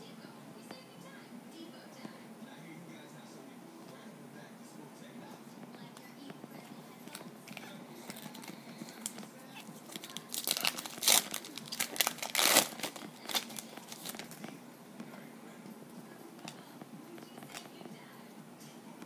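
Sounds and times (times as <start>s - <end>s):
wrapper tearing and crinkling: 9.8s - 14.4s.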